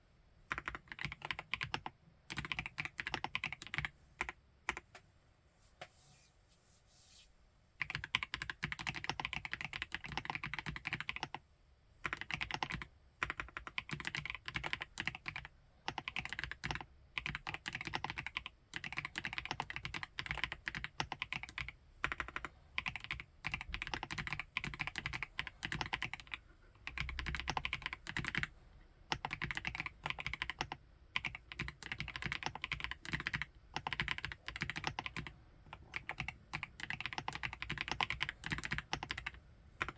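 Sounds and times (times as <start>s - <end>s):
mechanical keyboard typing: 0.5s - 4.9s, 7.8s - 11.4s, 12.0s - 28.5s, 29.1s - 39.9s.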